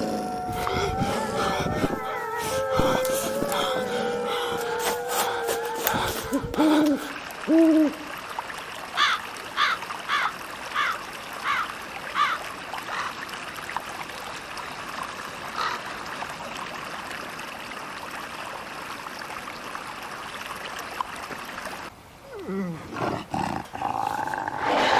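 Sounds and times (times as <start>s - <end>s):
owl hooting: 0.0s - 8.0s.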